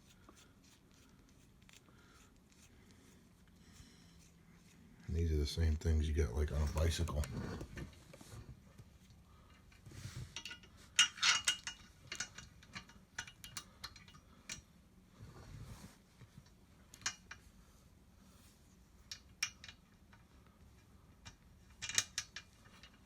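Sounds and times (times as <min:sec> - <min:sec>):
small metal parts clinking: 0:10.4 - 0:14.6.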